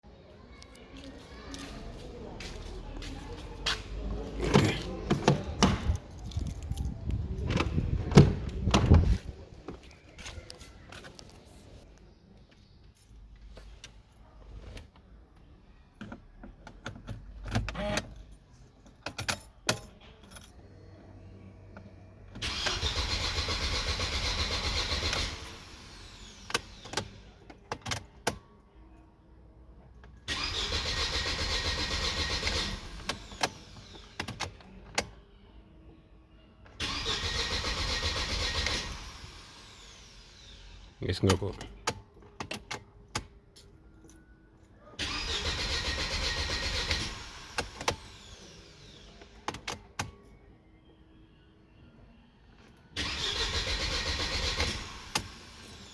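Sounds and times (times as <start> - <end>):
knocks and handling noises: 3.4 - 11.5
starter cranking engine: 22.4 - 27.2, 30.3 - 34.6, 36.8 - 41.8, 45.0 - 49.8, 53.0 - 55.9.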